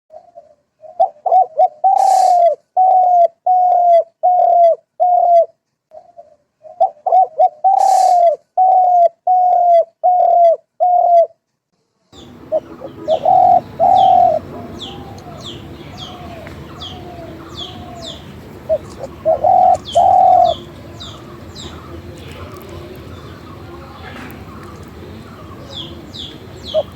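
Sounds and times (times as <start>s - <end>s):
bird low hooting: 0.1s - 11.3s, 12.2s - 26.9s
steady background hiss: 12.2s - 26.9s.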